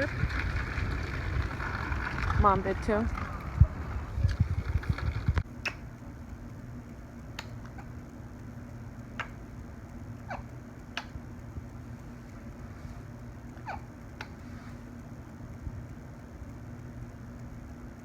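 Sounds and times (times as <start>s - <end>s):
low rumble: 0.0s - 5.4s
faint room hum: 0.0s - 18.0s.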